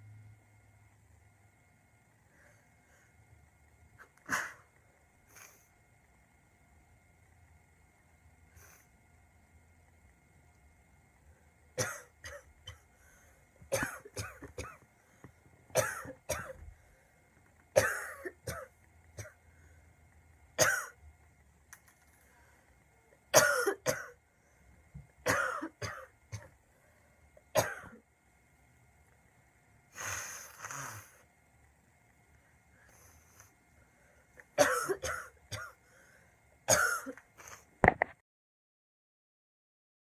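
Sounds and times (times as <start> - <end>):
girl coughing harshly: 11.8 - 12.8, 13.7 - 14.8, 15.7 - 16.6, 17.8 - 19.4, 20.6 - 21.0, 23.3 - 24.2, 25.3 - 26.5, 27.5 - 28.0, 34.6 - 35.8, 36.7 - 37.2
breathy rasping breath: 35.8 - 36.4.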